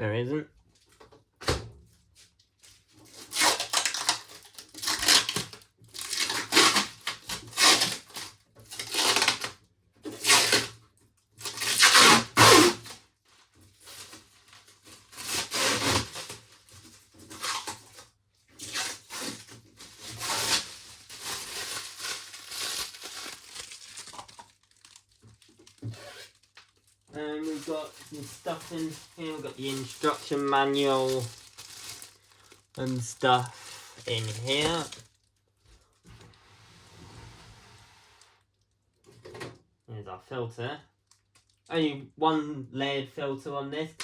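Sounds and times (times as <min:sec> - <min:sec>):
plastic film tearing and crinkling: 0:02.6 - 0:10.8, 0:11.4 - 0:36.0.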